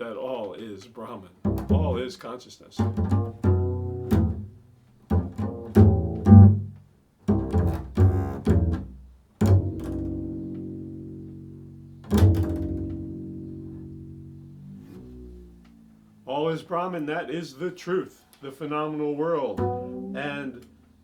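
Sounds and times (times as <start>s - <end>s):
plucked string instrument: 1.4s - 2.1s, 2.7s - 16.2s, 19.5s - 21.0s.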